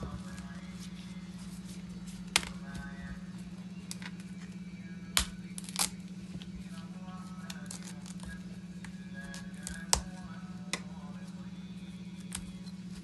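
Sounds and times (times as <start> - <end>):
soft background music: 0.0 - 13.0
steady low hum: 0.0 - 13.0
knife cracking through cauliflower: 5.2 - 6.0.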